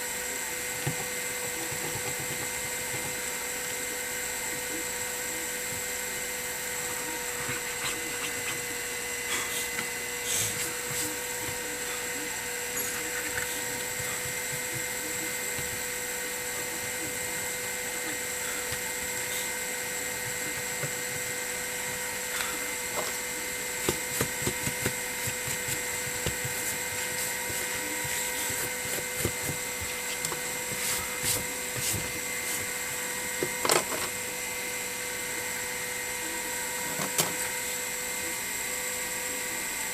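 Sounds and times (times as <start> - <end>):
high-pitched electrical whine: 0.0 - 39.9.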